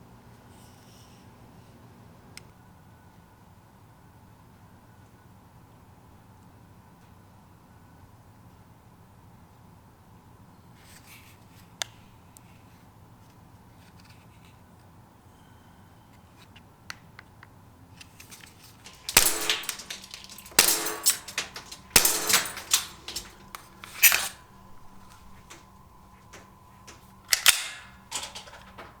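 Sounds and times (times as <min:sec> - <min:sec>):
sharp metallic clacks: 0:18.1 - 0:29.0.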